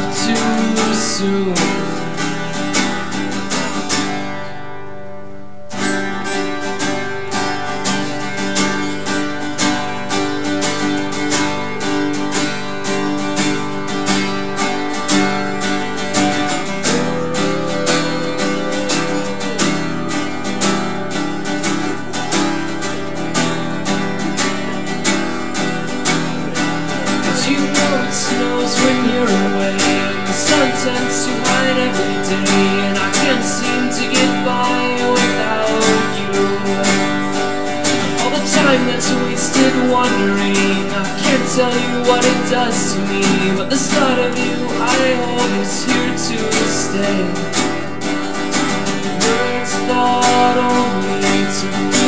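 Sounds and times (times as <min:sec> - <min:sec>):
acoustic guitar strumming: 0:00.0 - 0:52.0
held higher note: 0:13.5 - 0:38.3.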